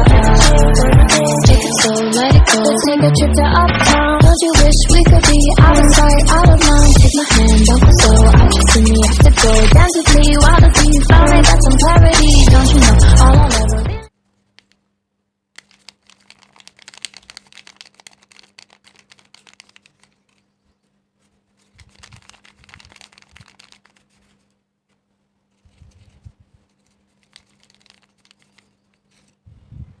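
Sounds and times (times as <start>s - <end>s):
paper crinkling and rustling: 15.6s - 29.4s.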